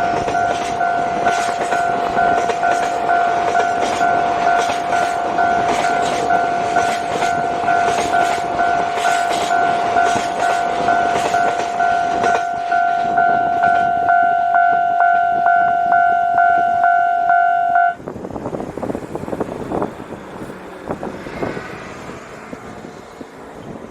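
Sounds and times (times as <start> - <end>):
train wheels clattering: 0.0 - 14.0
level crossing warning bell: 0.0 - 18.0
wind noise: 0.0 - 23.9.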